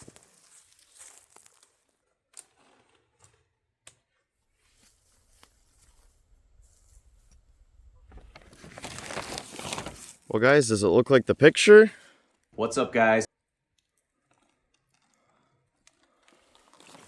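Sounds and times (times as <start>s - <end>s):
tent nylon rustling: 0.0s - 1.8s, 4.5s - 7.5s, 8.3s - 10.5s, 16.3s - 17.0s.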